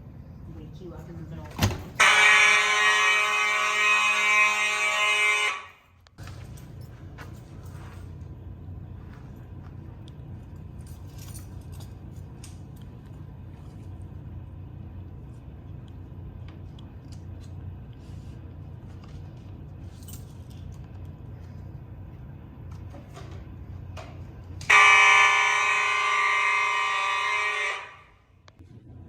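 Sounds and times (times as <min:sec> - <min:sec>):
steady low hum: 0:00.0 - 0:02.0, 0:06.0 - 0:29.0
light clicks and jingles: 0:09.2 - 0:13.8.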